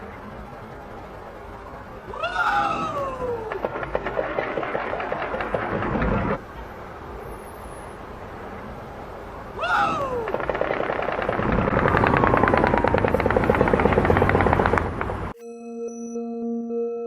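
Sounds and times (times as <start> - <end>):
short falling wail: 2.1 - 3.6, 9.6 - 10.4
rapid gunfire: 3.6 - 6.4, 10.3 - 15.3.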